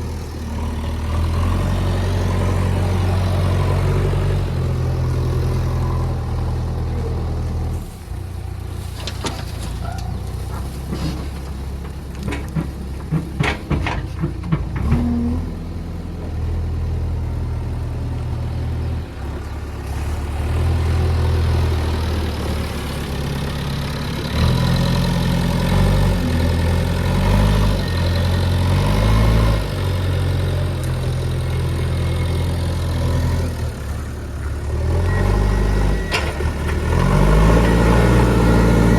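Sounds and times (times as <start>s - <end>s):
heavy diesel engine revving: 0.0s - 7.9s, 19.7s - 38.9s
knocks and clicks: 11.8s - 15.2s.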